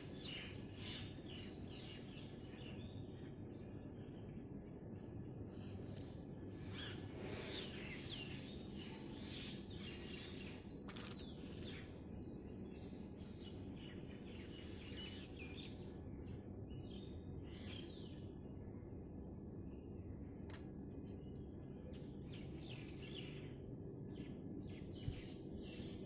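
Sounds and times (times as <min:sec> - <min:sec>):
birds chirping: 0:05.6 - 0:15.6, 0:21.2 - 0:26.0.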